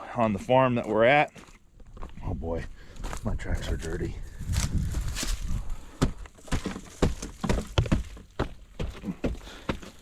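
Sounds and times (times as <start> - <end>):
footsteps on hard ground: 0.0 - 10.0.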